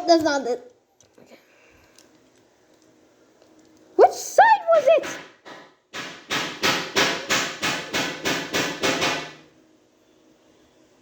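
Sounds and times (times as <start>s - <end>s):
hammer striking: 5.0s - 9.5s.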